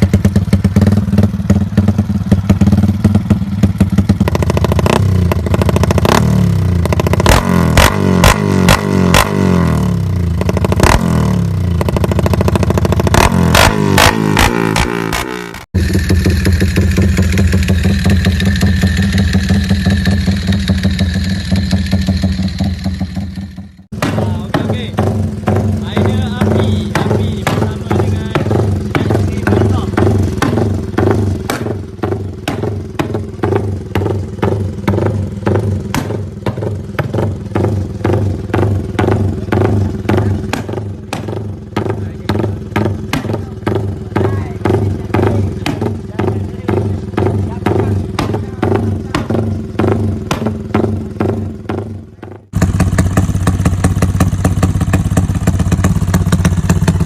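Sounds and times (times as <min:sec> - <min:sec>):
motorcycle engine idling: 0:00.0 - 0:57.0.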